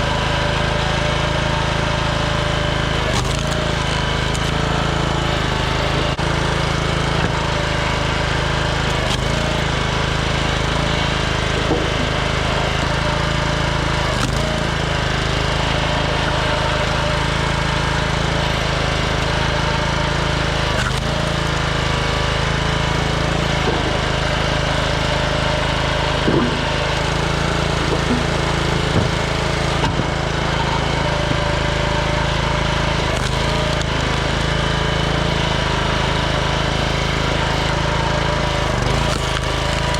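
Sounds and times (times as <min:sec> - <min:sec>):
small gas engine running: 0:00.0 - 0:39.9
wood cracking: 0:22.8 - 0:32.1.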